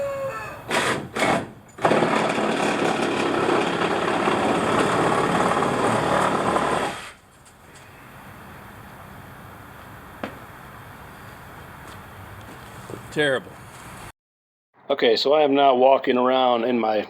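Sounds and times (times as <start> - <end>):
power saw cutting: 0.7 - 7.2.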